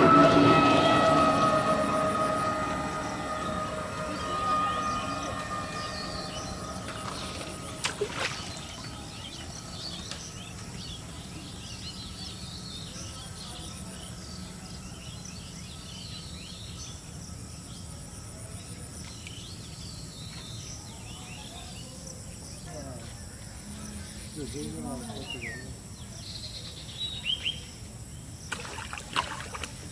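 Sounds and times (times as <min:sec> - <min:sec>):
birds chirping: 0:00.0 - 0:17.0
insect drone: 0:00.0 - 0:29.9.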